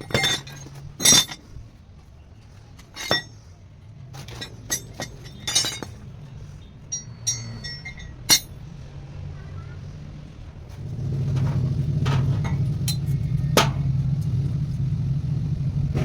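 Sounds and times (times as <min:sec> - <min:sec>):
short metallic ring: 0:00.0 - 0:01.4, 0:02.8 - 0:03.4, 0:04.3 - 0:06.0, 0:06.9 - 0:08.6
metal pieces clinking: 0:00.0 - 0:01.5, 0:02.8 - 0:03.4, 0:04.2 - 0:06.1, 0:06.9 - 0:08.6, 0:11.3 - 0:13.7.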